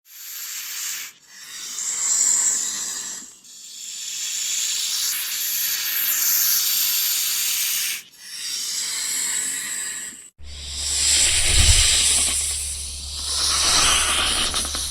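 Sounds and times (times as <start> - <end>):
snake hissing: 10.4 - 14.9.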